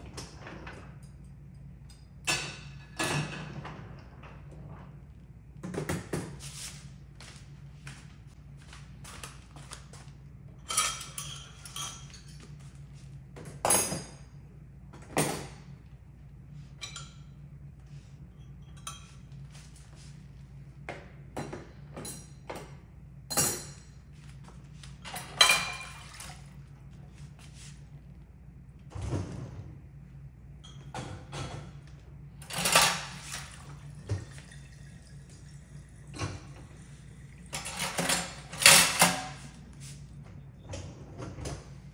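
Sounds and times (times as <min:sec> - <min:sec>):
low steady hum: 0:00.0 - 0:41.9
dishes and cutlery clinking: 0:10.6 - 0:12.6, 0:18.4 - 0:19.4, 0:25.0 - 0:26.3, 0:37.5 - 0:39.6.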